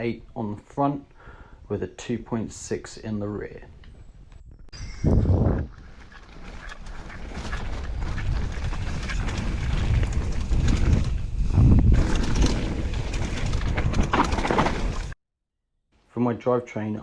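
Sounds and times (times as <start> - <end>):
wind buffeting microphone: 4.2 - 15.2.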